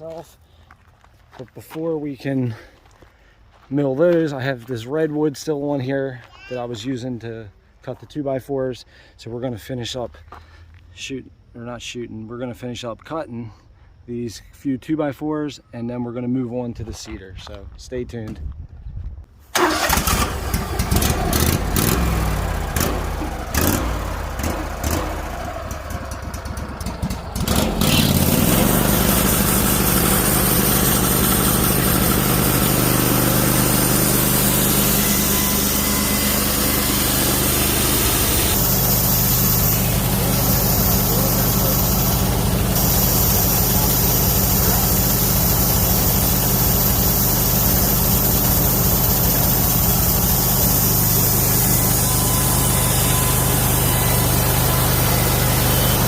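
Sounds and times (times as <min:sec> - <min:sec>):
sawmill engine running: 0:19.6 - 0:56.0.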